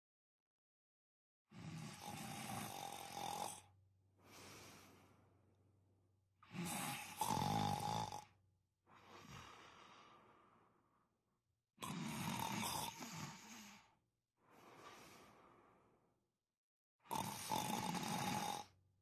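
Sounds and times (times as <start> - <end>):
person snoring: 1.5 - 5.2, 6.4 - 10.3, 11.8 - 14.0, 17.0 - 18.8
quiet breath: 2.0 - 16.2.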